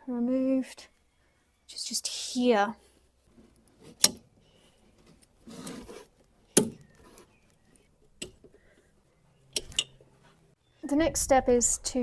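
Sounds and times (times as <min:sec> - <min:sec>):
scraping rustle: 0:02.8 - 0:08.0.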